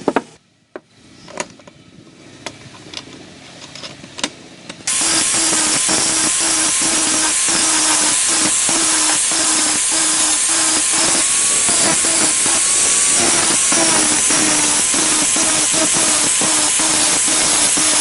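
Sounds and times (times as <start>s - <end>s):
electric power tool grinding: 4.9s - 18.0s.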